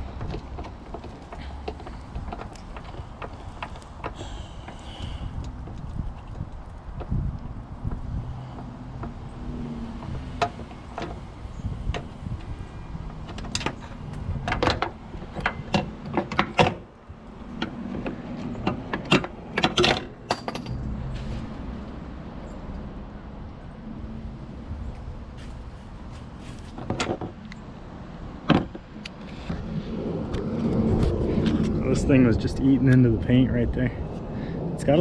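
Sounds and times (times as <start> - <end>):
metal tools clicking and clinking: 19.0 - 20.8.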